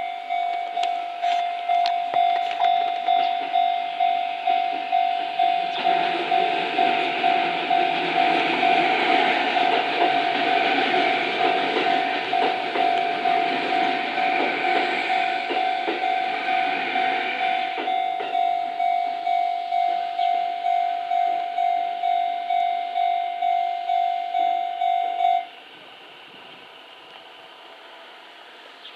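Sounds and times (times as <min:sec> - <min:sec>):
level-crossing warning bell: 0:00.0 - 0:28.3
train rumble and wheel clicks: 0:00.0 - 0:28.9.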